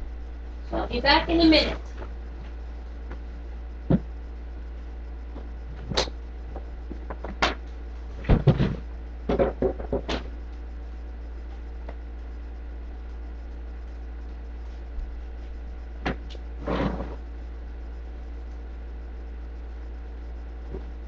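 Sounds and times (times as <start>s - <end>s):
low electrical hum: 0.0s - 21.0s
knocks of things being moved: 5.3s - 10.4s.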